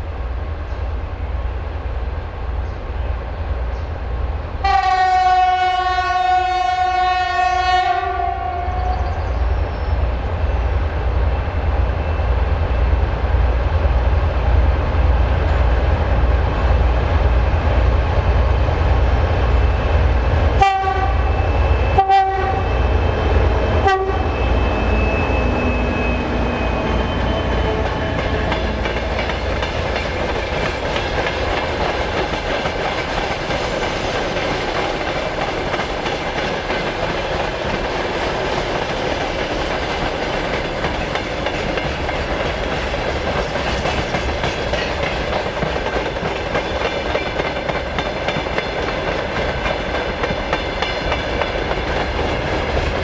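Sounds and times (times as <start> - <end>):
low rumble of locomotive engines: 0.0 - 53.0
locomotive horn blasts: 4.6 - 8.9, 20.6 - 22.8, 23.8 - 28.1
train wheels clattering: 26.5 - 53.0.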